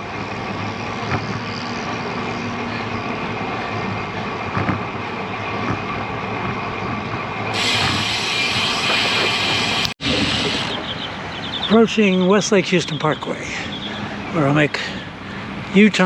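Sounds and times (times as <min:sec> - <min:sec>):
wind and road noise: 0:00.0 - 0:16.0
high hiss: 0:07.6 - 0:10.7.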